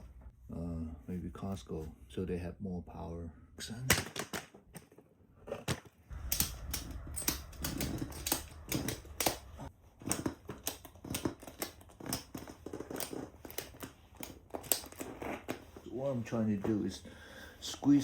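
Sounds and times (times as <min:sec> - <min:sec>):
low rumble: 0:06.1 - 0:09.7
ratchet strap clicking: 0:06.1 - 0:15.6.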